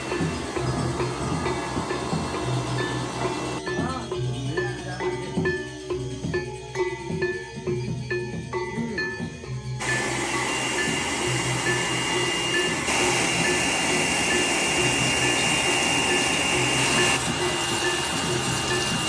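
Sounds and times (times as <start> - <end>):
power tool whining: 0.0 - 3.6, 9.8 - 19.0.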